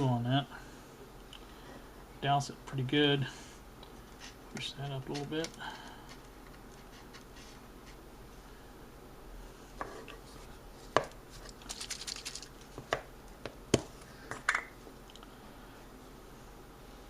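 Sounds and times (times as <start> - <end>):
paper rustling: 11.3 - 12.8.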